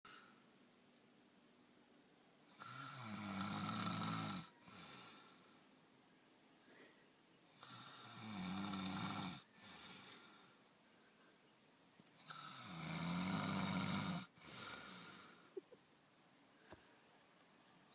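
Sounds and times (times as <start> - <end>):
person snoring: 2.6 - 5.4, 7.6 - 10.4, 12.2 - 15.4.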